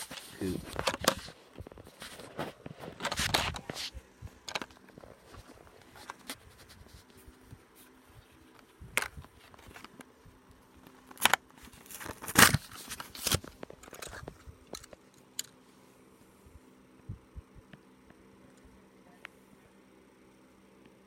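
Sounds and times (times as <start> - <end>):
plastic packaging crinkling: 10.8 - 15.0
cardboard tearing: 11.1 - 14.0.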